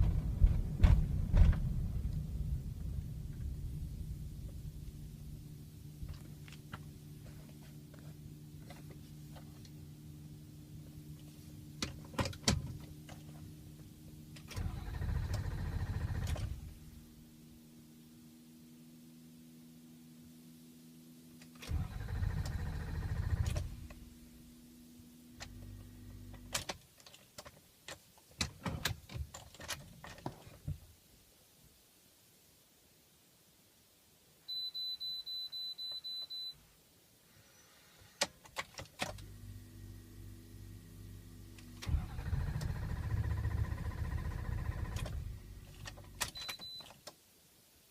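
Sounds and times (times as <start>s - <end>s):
diesel engine cranking and running: 14.5s - 16.6s, 21.7s - 23.8s, 41.8s - 46.3s.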